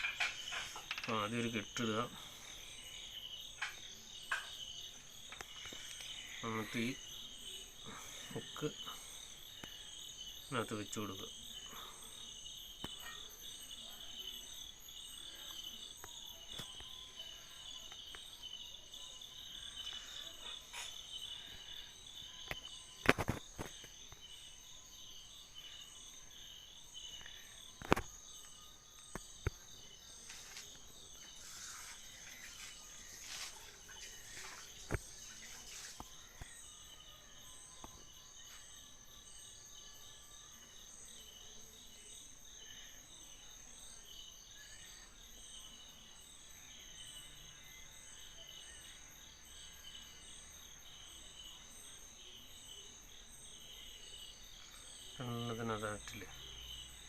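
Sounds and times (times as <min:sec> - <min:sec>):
insects trilling: 0:00.0 - 0:57.0.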